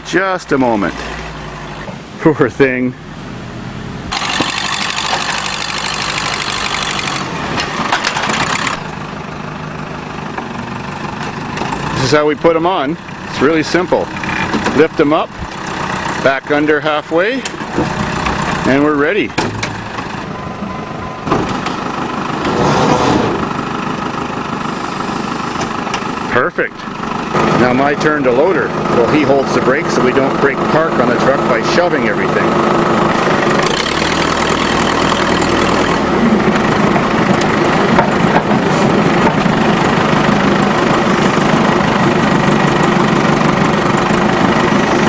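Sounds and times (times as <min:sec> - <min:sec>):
vehicle engine idling: 0:00.0 - 0:45.0
loud rapid rattling clatter: 0:04.1 - 0:08.9, 0:33.1 - 0:36.0.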